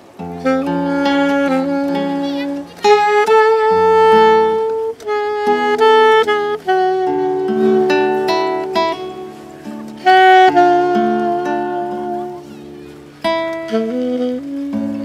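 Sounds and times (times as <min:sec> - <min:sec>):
saxophone slow melody: 0:00.0 - 0:15.0
strummed acoustic guitar: 0:00.0 - 0:15.0.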